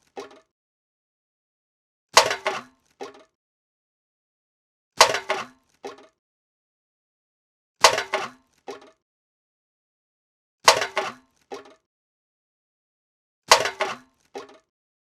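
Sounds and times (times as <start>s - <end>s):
metal can clattering into bin: 2.2s - 3.2s, 5.0s - 6.1s, 7.8s - 8.9s, 10.7s - 11.8s, 13.5s - 14.6s.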